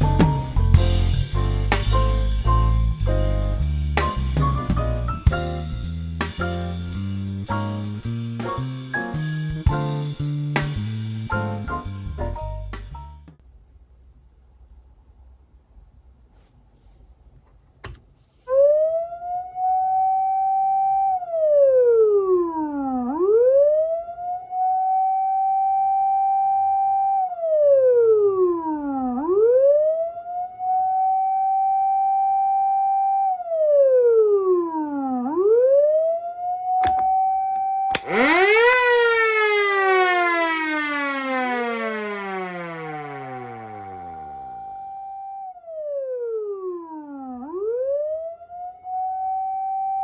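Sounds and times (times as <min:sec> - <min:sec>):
electronic siren wailing: 0:18.5 - 0:50.0
motor siren winding down: 0:18.5 - 0:50.0
clicks: 0:36.8 - 0:38.9.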